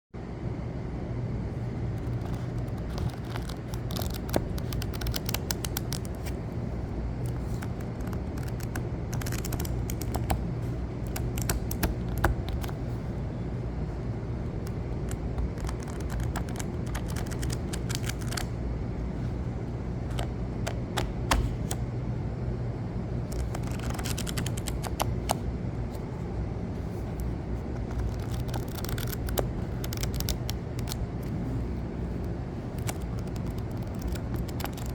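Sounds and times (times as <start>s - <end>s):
low steady hum: 0.2s - 34.9s
book pages flicking: 2.0s - 6.6s, 14.8s - 18.6s, 20.0s - 21.8s, 23.2s - 25.4s, 26.8s - 31.5s, 32.1s - 34.9s.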